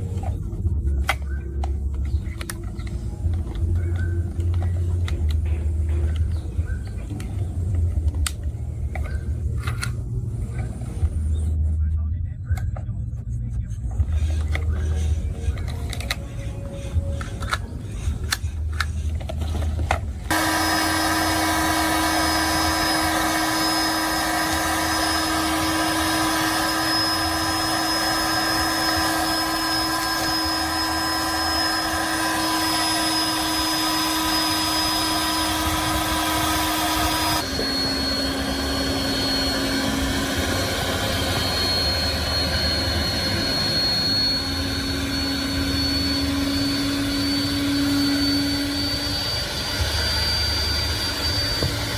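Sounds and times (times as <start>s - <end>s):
small electric motor whining: 14.0s - 51.9s.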